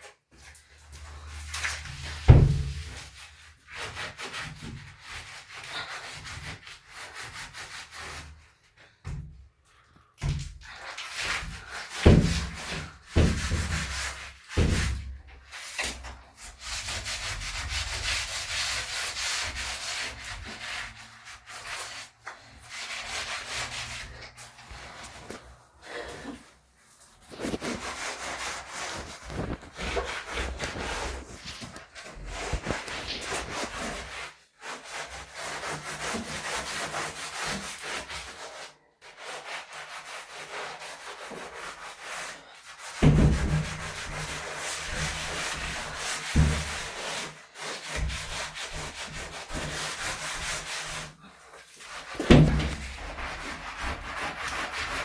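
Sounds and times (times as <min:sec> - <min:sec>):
cloth scrubbing a surface: 0:00.0 - 0:55.0
thump: 0:02.3 - 0:02.8, 0:43.0 - 0:43.7, 0:46.4 - 0:46.8, 0:52.2 - 0:52.9.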